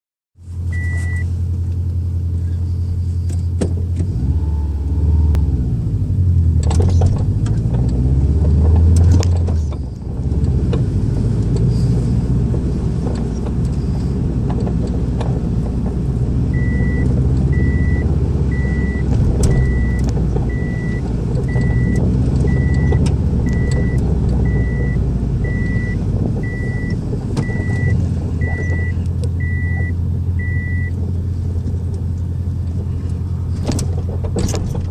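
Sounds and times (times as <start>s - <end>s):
car engine hum: 0.4s - 34.9s
sharp clunks and knocks: 3.3s - 4.2s, 6.6s - 9.8s, 33.5s - 34.9s
warning chime beeps: 16.6s - 30.9s.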